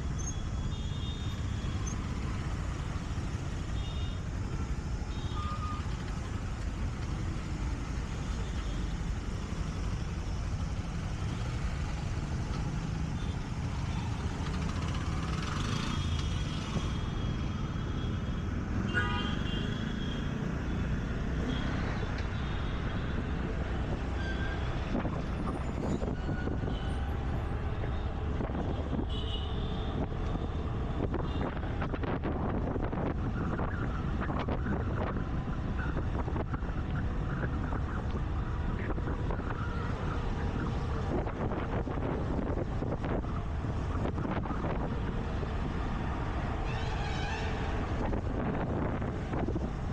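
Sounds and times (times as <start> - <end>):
passing vehicles: 0.0 - 49.9
wind on microphone: 29.9 - 49.9.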